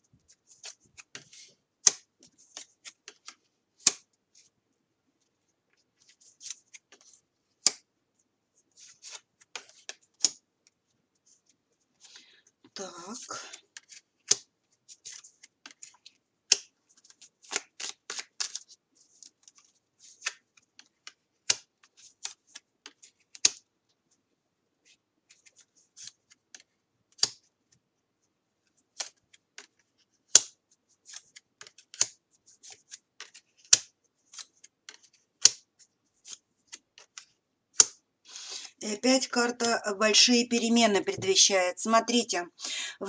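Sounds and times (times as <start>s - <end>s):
cards being shuffled: 0.3s - 4.5s, 8.7s - 10.4s, 13.2s - 23.6s, 28.7s - 38.8s.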